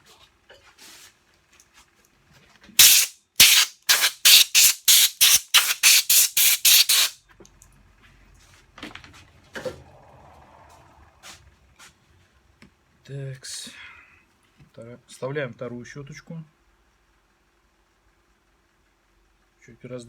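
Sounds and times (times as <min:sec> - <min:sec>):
aerosol can spraying bursts: 0:02.8 - 0:07.2.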